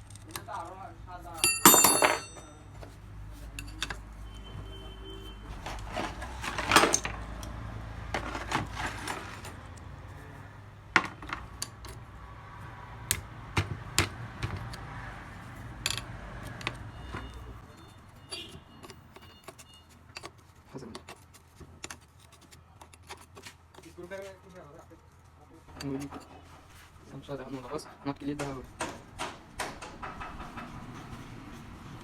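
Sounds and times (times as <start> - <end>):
metal tools clinking on workbench: 1.3 - 4.1, 5.5 - 7.5, 11.0 - 12.0, 15.4 - 21.2.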